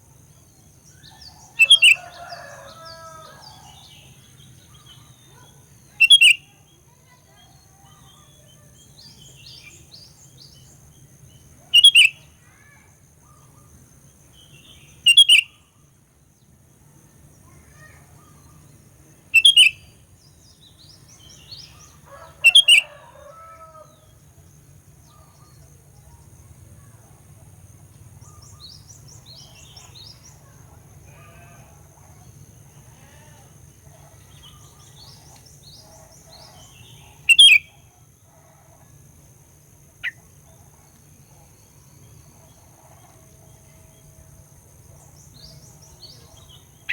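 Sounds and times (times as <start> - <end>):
faint bird chirping: 0.0 - 46.9
bird giving loud calls: 22.1 - 23.8.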